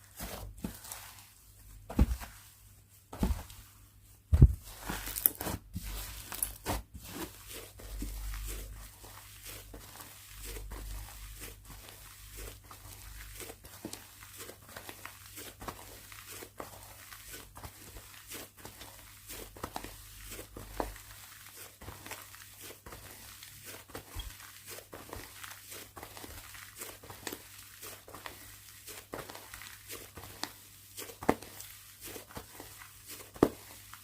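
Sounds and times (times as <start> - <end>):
slime crackling and popping: 4.9 - 5.5.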